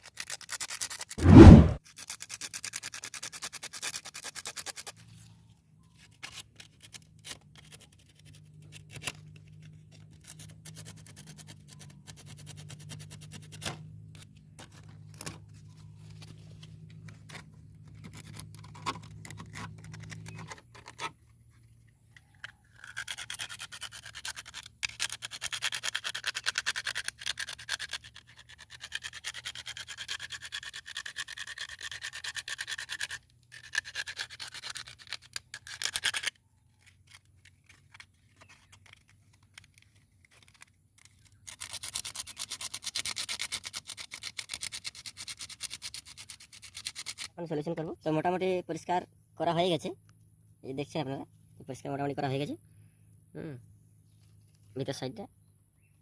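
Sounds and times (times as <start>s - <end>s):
sandpaper rubbing on metal: 0.2s - 5.0s, 10.1s - 13.8s, 22.9s - 36.3s, 41.5s - 47.3s.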